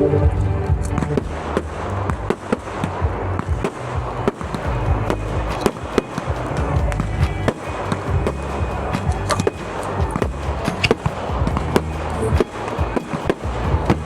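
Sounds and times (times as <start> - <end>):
music with heavy bass: 0.0 - 14.0
fireworks bangs and crackles: 0.7 - 14.0.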